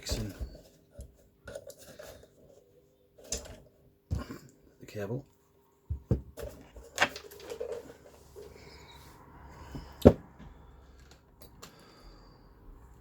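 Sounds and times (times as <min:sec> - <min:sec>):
handling tools and wire: 0:06.0 - 0:08.9.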